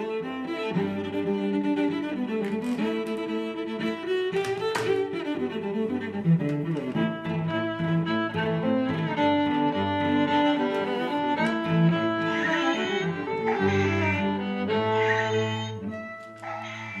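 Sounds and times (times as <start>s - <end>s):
cellos and bowed strings music: 0.0s - 17.0s
sharp clicks: 2.2s - 3.3s, 4.3s - 5.2s.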